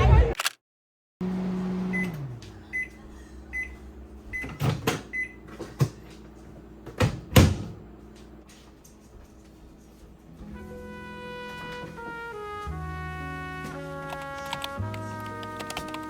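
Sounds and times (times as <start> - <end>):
microwave oven hum: 1.2 - 14.1
microwave beeps: 1.9 - 5.5.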